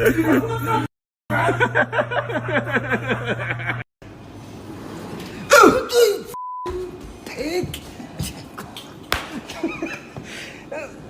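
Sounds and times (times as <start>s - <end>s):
people laughing: 0.0s - 3.8s, 9.3s - 10.5s
censor bleep: 6.4s - 6.8s.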